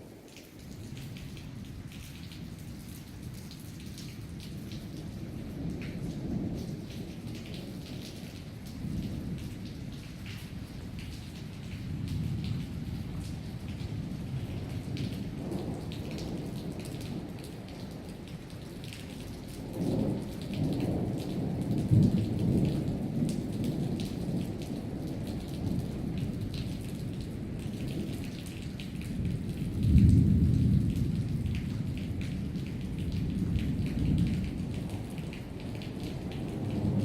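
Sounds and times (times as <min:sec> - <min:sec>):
rain pattering: 0:00.0 - 0:37.0
thunder rumbling: 0:29.2 - 0:37.0.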